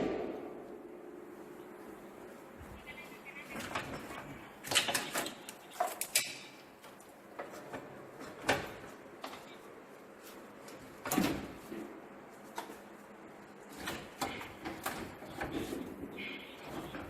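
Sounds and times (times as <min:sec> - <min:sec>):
tools and metal parts clanking: 0:03.6 - 0:09.6.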